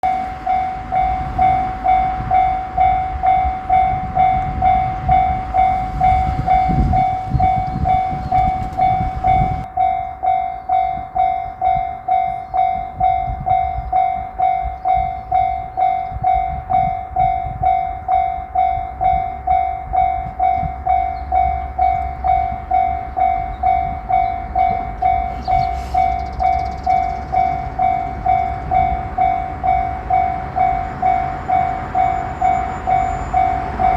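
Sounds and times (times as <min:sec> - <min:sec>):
level-crossing alarm ringing: 0:00.0 - 0:33.9
low train rumble: 0:00.0 - 0:33.9.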